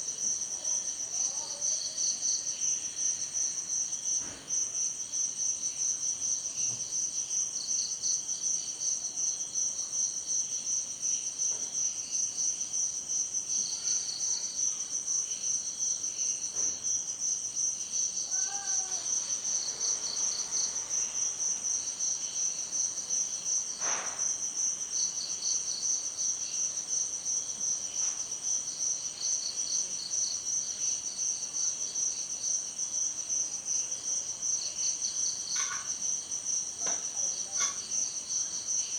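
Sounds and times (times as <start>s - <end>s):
crickets chirping: 0.0s - 38.9s
lower insect trill: 0.1s - 38.9s.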